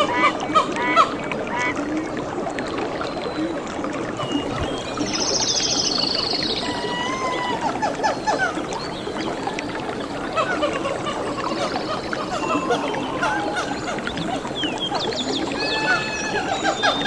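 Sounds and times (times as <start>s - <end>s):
whistled bird notes: 4.2s - 17.0s
bird trilling: 6.6s - 17.0s.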